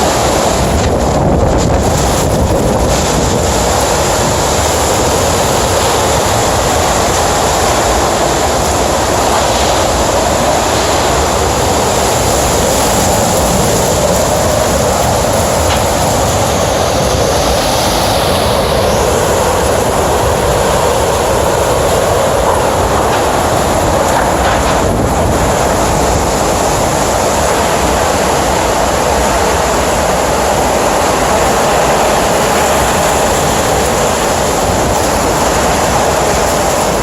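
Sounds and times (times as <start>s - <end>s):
hurricane wind blowing: 0.0s - 37.0s.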